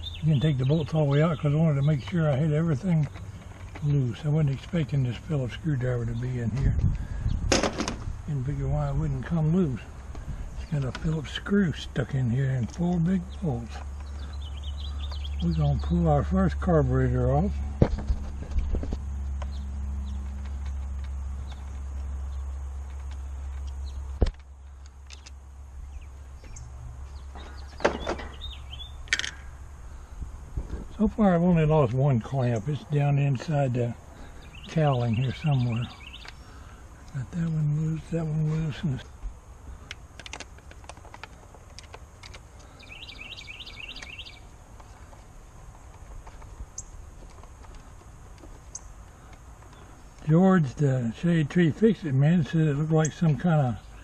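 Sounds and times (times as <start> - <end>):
songbird trilling call: 0.0 - 3.2, 12.8 - 16.6, 25.1 - 29.6, 34.4 - 39.0, 42.6 - 44.5
low outdoor rumble: 0.0 - 54.0
low steady hum: 0.0 - 54.0
metal clicks and knocks: 39.9 - 42.4.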